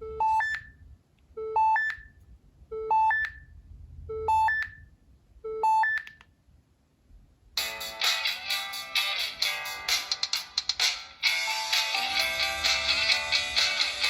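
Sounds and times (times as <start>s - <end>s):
phone ringtone beeps: 11.3s - 14.0s.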